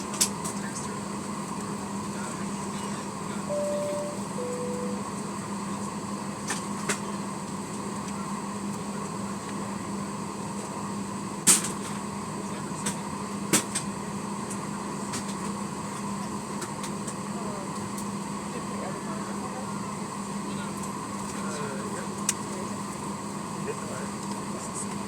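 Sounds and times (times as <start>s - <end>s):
two-tone cabin chime: 3.5s - 5.2s
air-conditioning hum: 3.5s - 5.3s.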